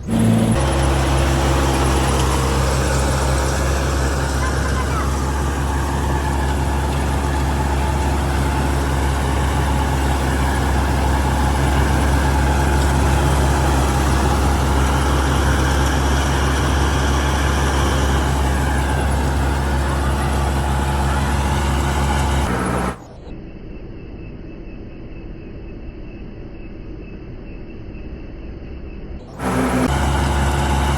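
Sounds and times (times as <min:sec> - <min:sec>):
combine harvester diesel engine: 0:00.0 - 0:23.5, 0:28.0 - 0:30.9
insects chirping: 0:23.2 - 0:29.3.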